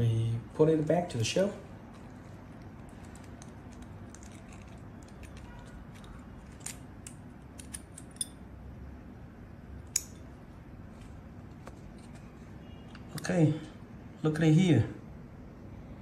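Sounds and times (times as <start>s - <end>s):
faint steady background noise: 0.0s - 16.0s
small metal parts clicking: 1.9s - 8.4s.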